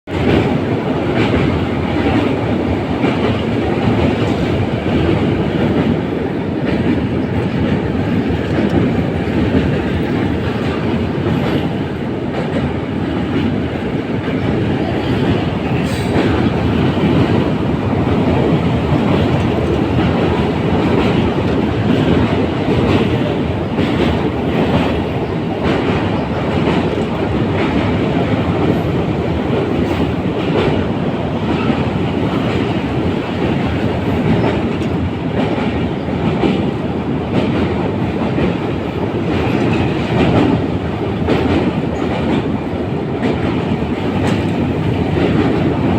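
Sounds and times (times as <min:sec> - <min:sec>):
train rumbling over bridge: 0:00.1 - 0:45.9.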